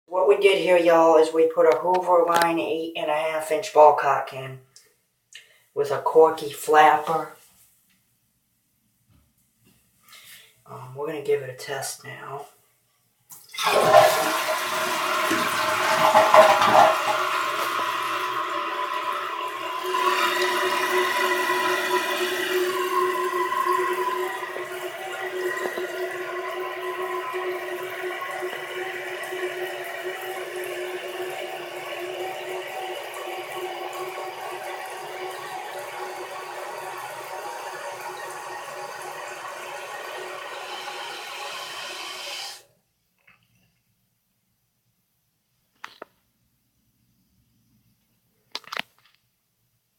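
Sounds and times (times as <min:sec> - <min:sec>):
toilet flushing: 0:00.1 - 0:04.0, 0:13.3 - 0:42.6
toilet tank refilling hiss: 0:13.3 - 0:42.6.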